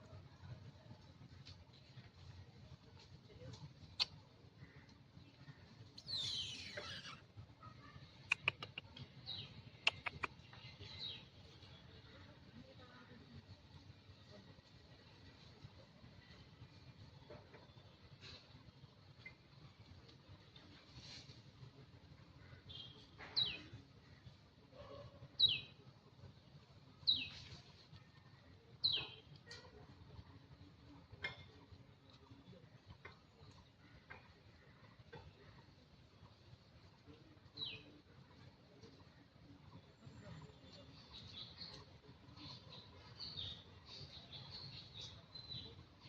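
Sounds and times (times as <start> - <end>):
monkey chirping: 6.0 - 7.2
monkey squealing: 6.1 - 7.2.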